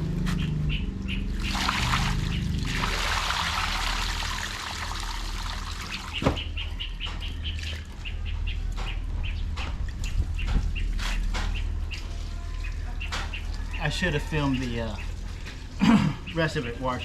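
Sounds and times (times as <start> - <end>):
water sloshing and splashing: 1.2 - 8.0.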